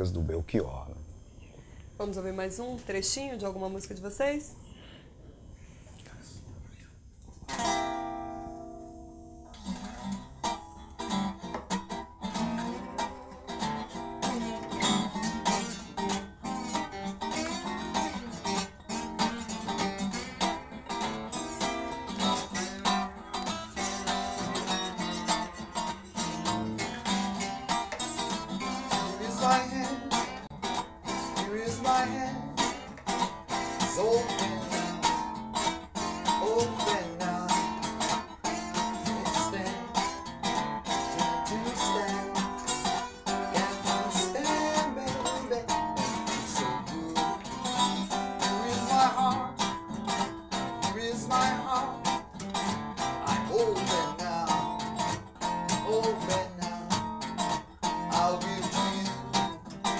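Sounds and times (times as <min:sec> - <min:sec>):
electric guitar: 0:07.3 - 0:59.9
blues band playing: 0:09.6 - 0:59.9.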